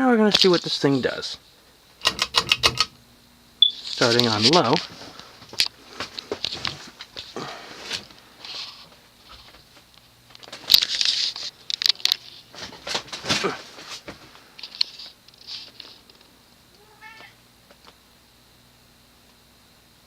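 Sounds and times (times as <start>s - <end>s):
ceiling fan motor hum: 0.0s - 20.0s
rustling and crackling: 3.8s - 16.3s.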